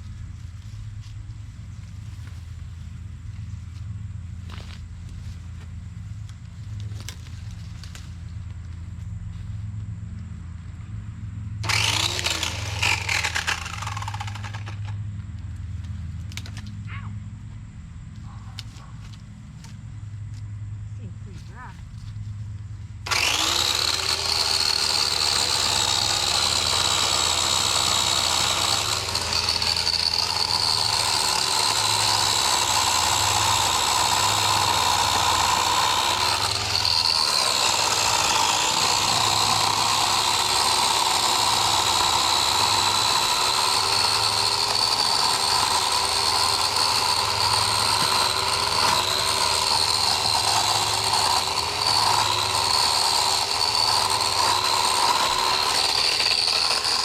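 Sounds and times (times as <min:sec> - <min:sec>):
chainsaw cutting branches: 0:04.3 - 0:08.9, 0:11.6 - 0:16.7, 0:23.0 - 0:57.0.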